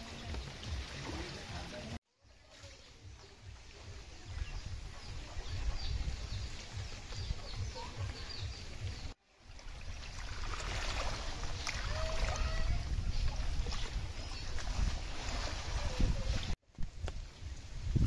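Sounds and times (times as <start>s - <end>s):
small birds chirping: 2.5s - 9.2s
wind buffeting microphone: 3.9s - 9.2s, 9.8s - 18.0s.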